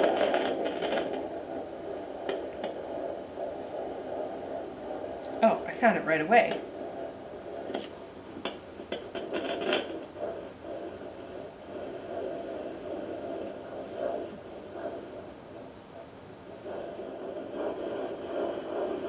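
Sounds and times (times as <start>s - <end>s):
probe scraping clicks: 7.6s - 10.2s.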